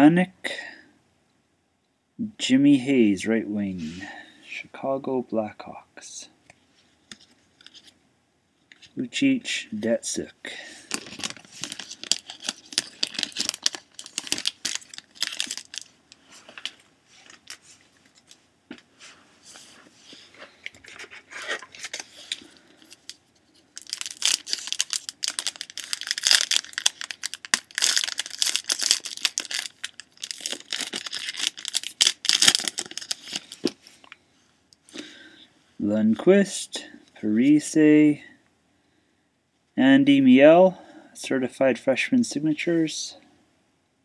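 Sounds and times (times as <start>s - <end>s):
wrappers torn and crinkled: 10.9s - 16.0s, 21.3s - 33.7s.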